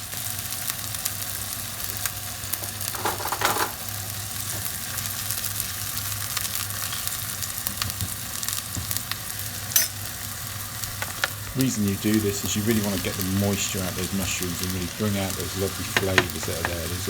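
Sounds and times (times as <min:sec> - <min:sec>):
vegetables sizzling in a frying pan: 0:00.0 - 0:17.0.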